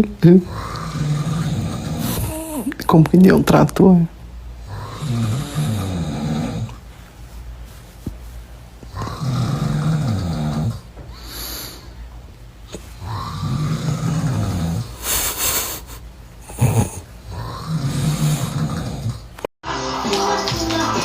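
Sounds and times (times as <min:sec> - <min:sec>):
man snoring loudly: 0:00.3 - 0:02.7, 0:04.7 - 0:06.8, 0:08.9 - 0:11.8, 0:13.0 - 0:15.0, 0:16.4 - 0:19.3
sharp snort: 0:00.5 - 0:02.7, 0:12.7 - 0:19.3
breathy hiss: 0:08.9 - 0:12.1, 0:12.7 - 0:19.1.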